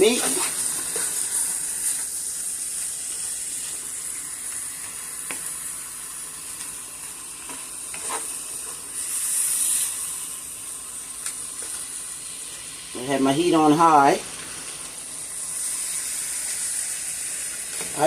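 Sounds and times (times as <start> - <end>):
beef sizzling in a pan: 0.0 - 18.0
stirring scrapes and taps: 7.5 - 8.8.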